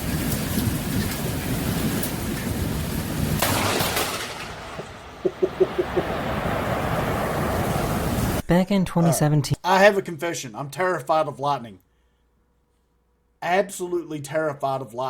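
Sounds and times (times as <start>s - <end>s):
sharp crash: 3.4s - 5.2s
loud rushing outdoor noise: 4.8s - 8.4s.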